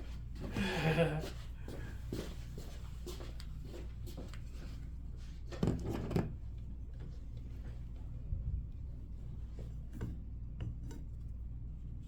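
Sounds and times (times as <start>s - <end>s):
steady low hum: 6.4s - 12.0s.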